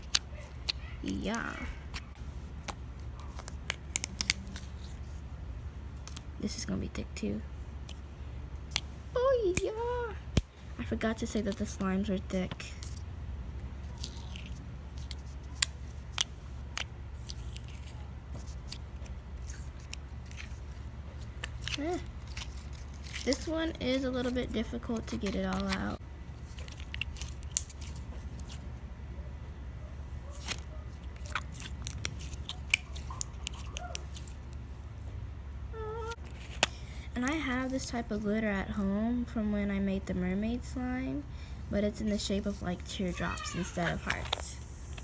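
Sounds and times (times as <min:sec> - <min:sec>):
steady low hum: 0:00.0 - 0:45.0
sticky slime clicks and crackles: 0:26.5 - 0:28.6.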